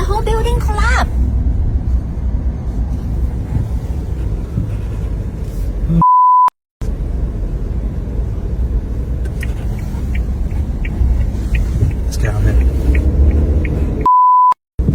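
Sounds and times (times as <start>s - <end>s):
steady low rumble: 0.0s - 6.0s, 6.8s - 14.1s
censor beep: 6.0s - 6.6s, 14.1s - 14.6s.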